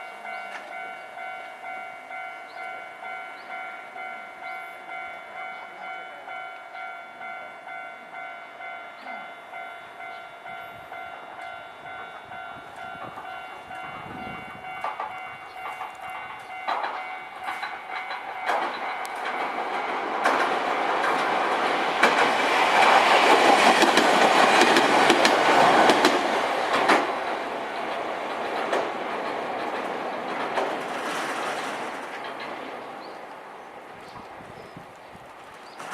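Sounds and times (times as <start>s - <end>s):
level crossing warning bell: 0.0s - 26.0s
electric train passing: 0.0s - 35.9s
wheels clicking over rail joints: 11.4s - 33.2s, 34.0s - 35.9s.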